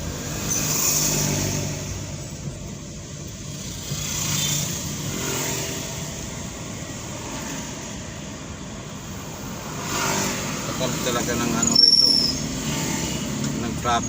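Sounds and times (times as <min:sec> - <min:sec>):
hum of surrounding cars: 0:00.0 - 0:14.0.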